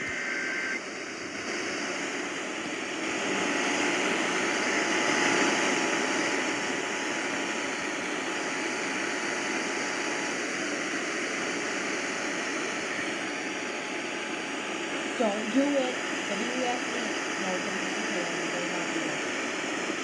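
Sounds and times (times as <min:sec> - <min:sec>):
faint two-tone attention signal: 0:00.0 - 0:00.8
radio static hiss: 0:00.0 - 0:20.0.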